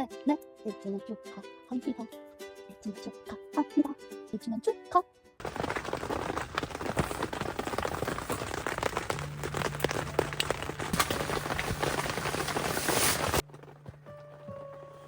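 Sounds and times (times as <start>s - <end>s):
heavy rain pelting down: 5.4s - 13.4s.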